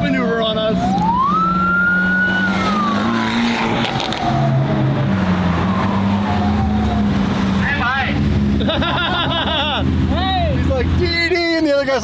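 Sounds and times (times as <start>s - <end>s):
car engines in traffic: 0.0s - 12.0s
siren wailing: 0.8s - 7.5s.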